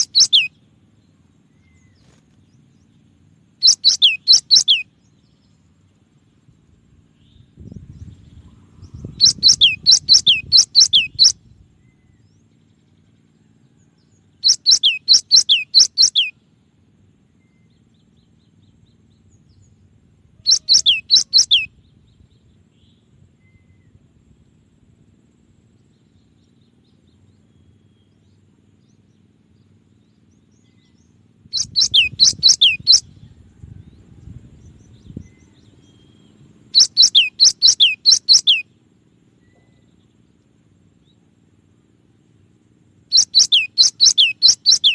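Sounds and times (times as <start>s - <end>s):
bird whistling repeated notes: 0.0s - 0.5s, 3.6s - 4.9s, 9.1s - 11.4s, 14.4s - 16.4s, 20.5s - 21.7s, 31.5s - 33.1s, 36.7s - 38.7s, 43.1s - 44.9s.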